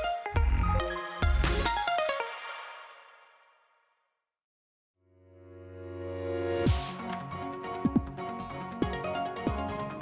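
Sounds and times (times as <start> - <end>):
electronic music: 0.0 - 3.0, 6.6 - 10.0.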